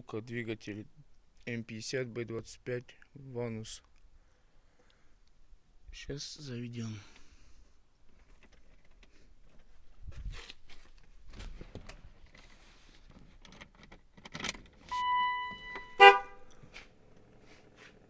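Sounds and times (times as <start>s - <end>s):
clicks and rustling: 8.0s - 15.0s
electronic warning beep: 14.9s - 16.2s
loud ringing chime: 15.0s - 16.0s.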